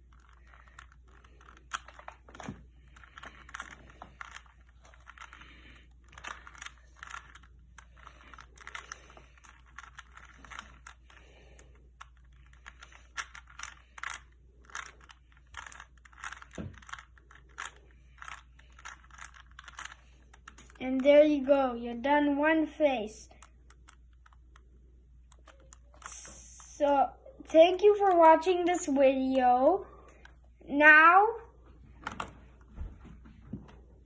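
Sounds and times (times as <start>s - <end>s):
puzzle cube plastic clicks: 0.0s - 21.1s, 23.3s - 27.0s, 27.7s - 29.0s.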